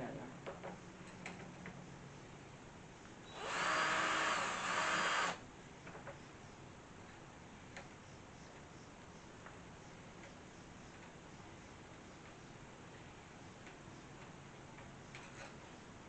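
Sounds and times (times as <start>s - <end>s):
power drill running: 3.3s - 5.4s.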